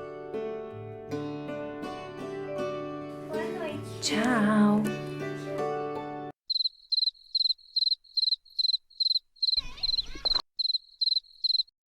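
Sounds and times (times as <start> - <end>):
lullaby music: 1.3 - 6.4
cricket chirping: 6.5 - 11.7.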